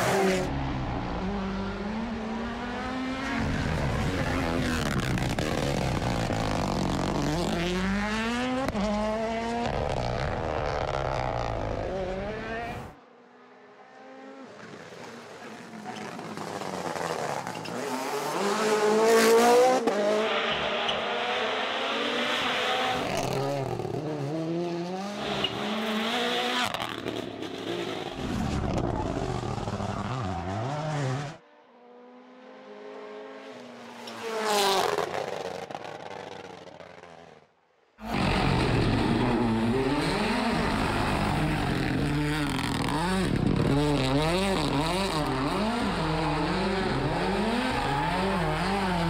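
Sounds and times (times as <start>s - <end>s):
rally car engines revving: 0.0s - 13.0s, 13.6s - 31.4s, 38.0s - 49.0s
cars passing loudly: 0.0s - 28.3s, 38.0s - 49.0s.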